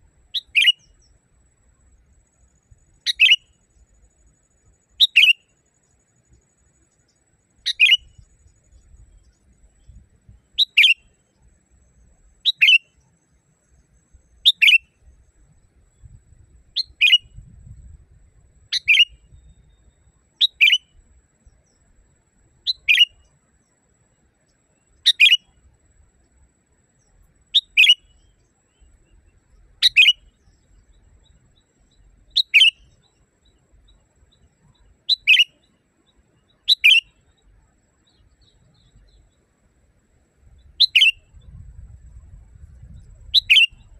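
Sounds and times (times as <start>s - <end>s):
bird calling sharp notes: 0.4s - 0.8s, 3.1s - 3.5s, 7.7s - 8.1s, 18.7s - 19.2s, 22.7s - 23.2s, 25.1s - 25.5s, 27.6s - 28.1s, 29.8s - 30.3s, 32.4s - 32.9s, 35.1s - 35.6s, 36.7s - 37.2s, 40.8s - 41.3s, 43.4s - 43.9s.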